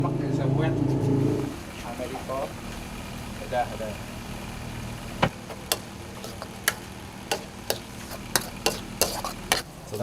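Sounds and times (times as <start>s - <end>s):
steady low hum: 0.0s - 10.0s
metal spatula striking a wok: 5.6s - 9.7s.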